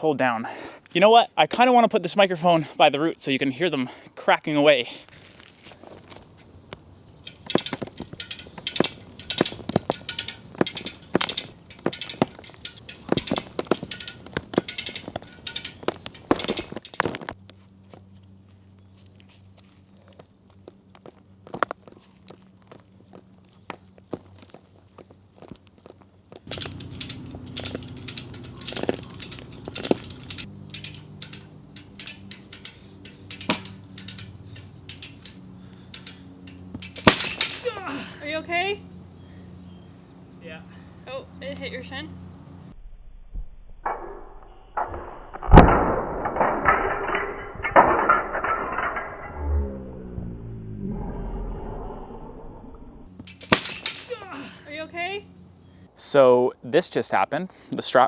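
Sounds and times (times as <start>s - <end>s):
ratchet strap clicking: 7.2s - 17.2s, 26.5s - 37.8s, 53.2s - 54.2s.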